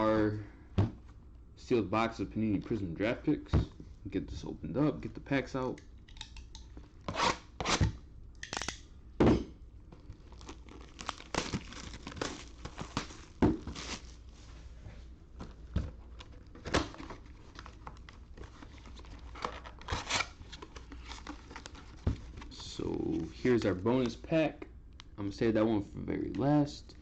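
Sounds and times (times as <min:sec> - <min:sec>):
plastic shrink wrap tearing: 0:10.2 - 0:14.2.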